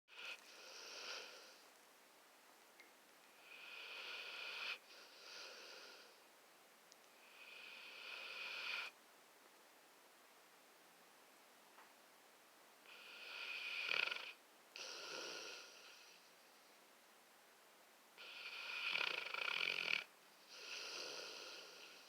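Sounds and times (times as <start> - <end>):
pet snoring: 0.1 - 1.6, 3.4 - 6.2, 7.2 - 9.0, 12.8 - 16.3, 18.2 - 22.0.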